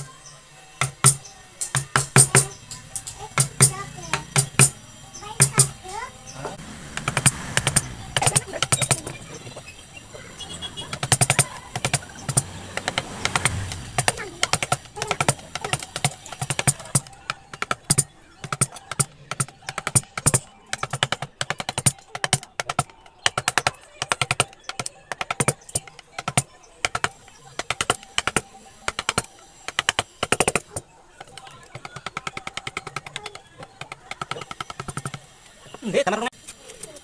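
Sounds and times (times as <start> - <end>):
mallet tapping chisel into wood: 0.8 - 2.6, 3.3 - 4.8, 6.9 - 9.0, 10.9 - 35.2.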